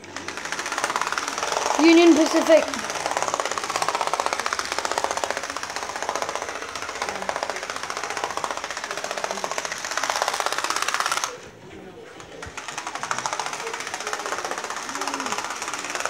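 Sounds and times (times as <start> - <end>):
model train rattling on track: 0.0 - 11.5, 12.1 - 16.0.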